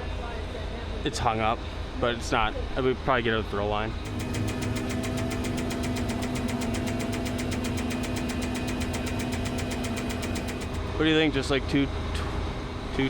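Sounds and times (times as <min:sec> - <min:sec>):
diesel engine idling: 0:01.6 - 0:11.8.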